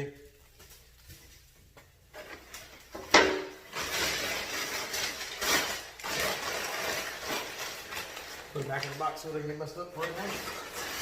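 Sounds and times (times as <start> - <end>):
heavy paper crinkling: 3.6 - 11.0.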